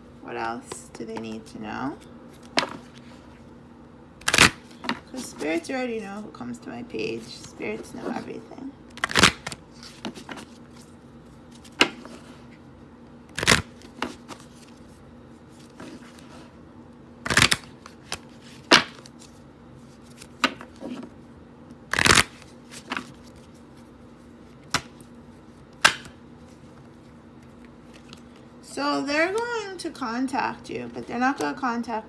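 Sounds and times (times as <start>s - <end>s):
cards being shuffled: 1.2s - 3.4s, 4.2s - 5.8s, 7.1s - 12.6s, 13.3s - 16.6s, 17.2s - 21.2s, 21.9s - 28.5s
card slaps and taps: 24.7s - 25.0s, 25.8s - 26.2s.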